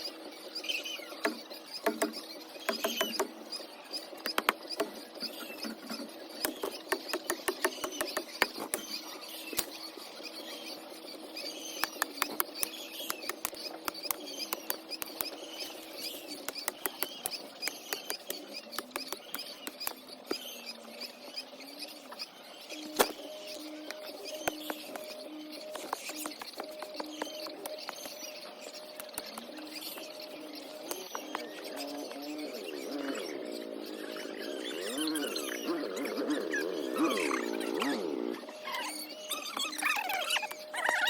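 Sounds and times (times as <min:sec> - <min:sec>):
chicks peeping: 0:00.0 - 0:41.0
sharp clicks and taps: 0:11.8 - 0:15.4, 0:16.4 - 0:20.4.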